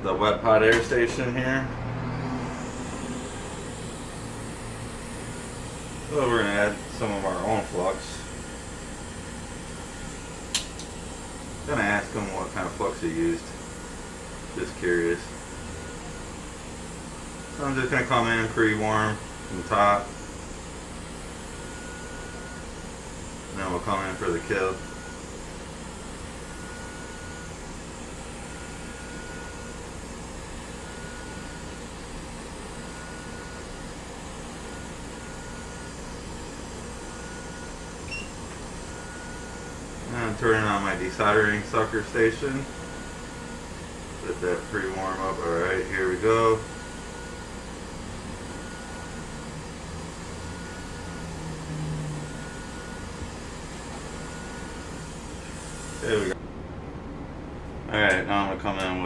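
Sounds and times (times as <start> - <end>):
electronics equipment whirring: 0.0 - 59.0
hot air blowing: 1.5 - 27.7, 38.3 - 56.4.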